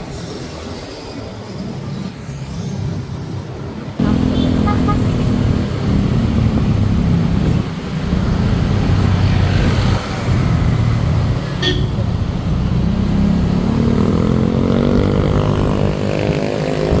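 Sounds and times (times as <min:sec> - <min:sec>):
road noise: 0:00.0 - 0:17.0
vehicle engine hum: 0:04.0 - 0:17.0.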